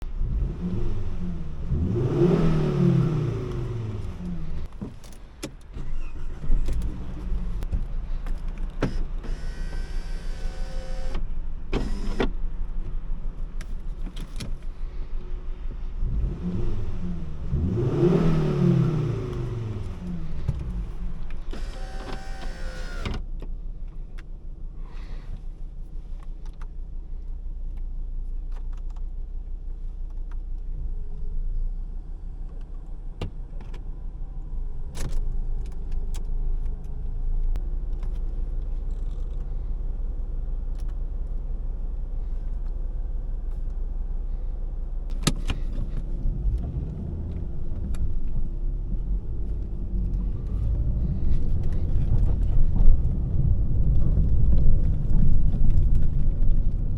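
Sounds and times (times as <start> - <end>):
car engine low rumble: 0.0 - 56.9.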